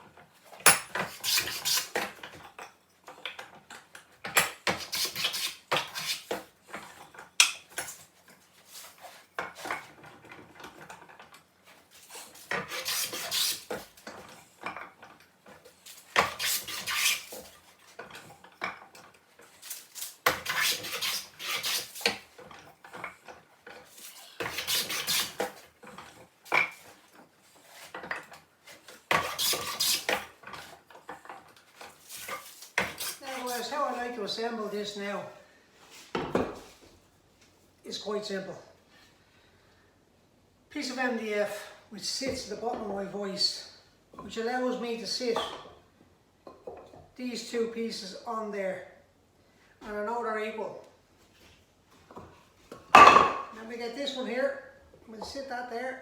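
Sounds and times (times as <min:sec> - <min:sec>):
hand plane smoothing wood: 0:01.0 - 0:02.1, 0:04.7 - 0:06.4, 0:12.2 - 0:13.8, 0:16.1 - 0:17.6, 0:20.3 - 0:22.2, 0:24.0 - 0:25.6, 0:29.1 - 0:30.3, 0:32.8 - 0:34.1
wood and tools knocking: 0:36.1 - 0:36.7.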